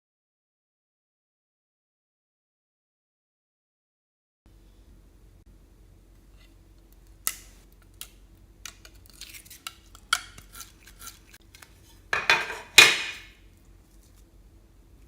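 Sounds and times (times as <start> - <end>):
containers and utensils clinking: 12.2 - 13.3
utensils clattering: 12.2 - 13.3.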